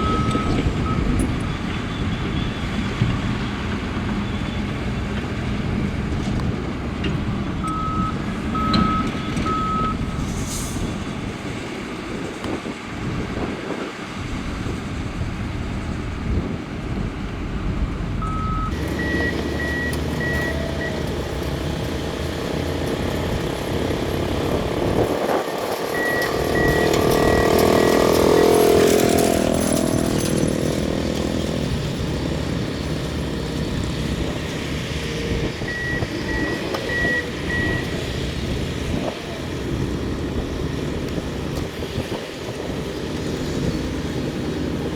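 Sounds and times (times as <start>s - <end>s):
reverse alarms beeping: 0.0s - 2.7s, 7.6s - 10.1s, 18.2s - 21.9s, 25.1s - 29.9s, 35.5s - 38.0s
diesel engines running under load: 0.0s - 44.9s.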